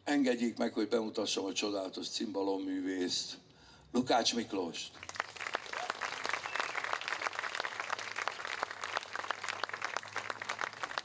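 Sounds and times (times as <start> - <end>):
crowd applauding: 5.0 - 11.0.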